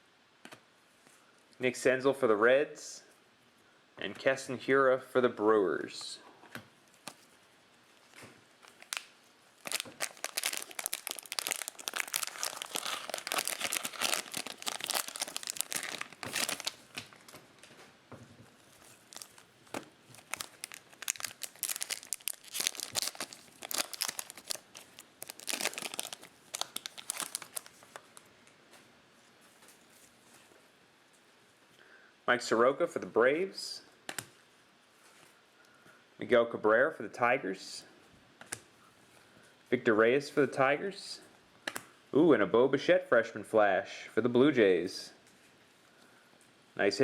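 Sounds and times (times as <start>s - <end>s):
cellophane wrapper crinkling: 6.9s - 17.7s, 18.5s - 28.3s.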